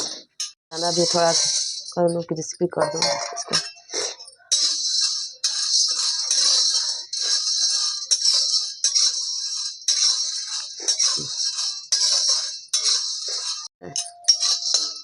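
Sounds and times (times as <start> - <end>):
nuts stirred in a dry pan: 0.8 - 2.1, 3.9 - 13.7.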